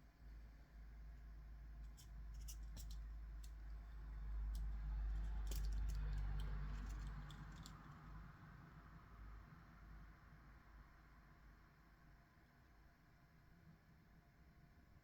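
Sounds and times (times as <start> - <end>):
small clicks and light taps: 1.8 - 3.8, 4.4 - 8.0.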